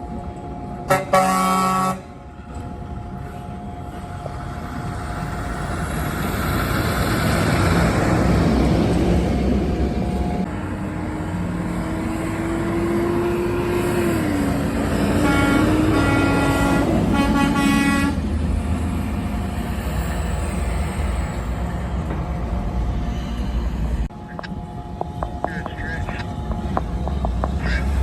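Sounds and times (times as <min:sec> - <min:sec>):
passing trucks rumbling: 0:00.0 - 0:28.0
truck air horn blasts: 0:00.9 - 0:02.1, 0:15.2 - 0:18.2.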